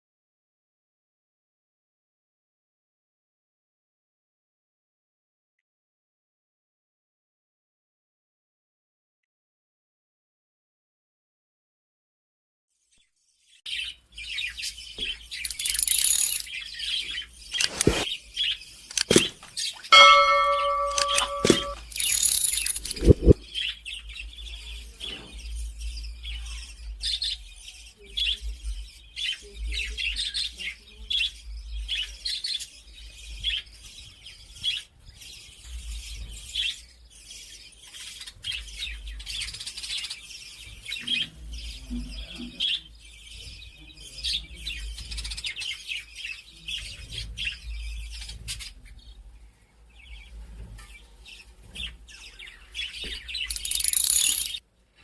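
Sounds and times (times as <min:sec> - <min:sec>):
birds chirping: 0:13.7 - 0:35.0, 0:35.6 - 0:54.6.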